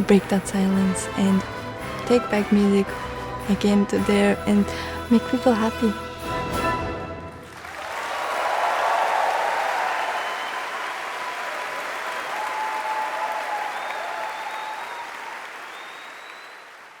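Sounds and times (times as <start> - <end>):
audience applauding: 7.3 - 17.0.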